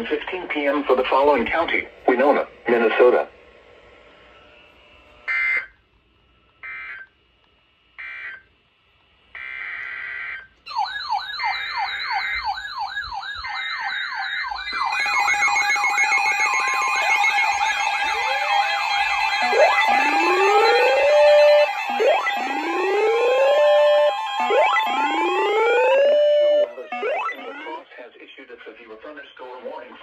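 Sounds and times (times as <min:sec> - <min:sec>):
steady drone: 0:00.0 - 0:04.4, 0:13.6 - 0:27.9
electronic siren yelp: 0:05.3 - 0:05.8, 0:06.6 - 0:07.1, 0:08.0 - 0:08.4, 0:09.4 - 0:27.9
buzzy alert data tones: 0:10.7 - 0:27.8
high warbling tone: 0:10.7 - 0:27.9.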